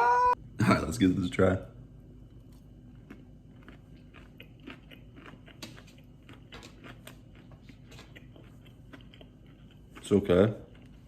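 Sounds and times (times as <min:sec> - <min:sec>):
person chewing food: 0:02.2 - 0:11.0.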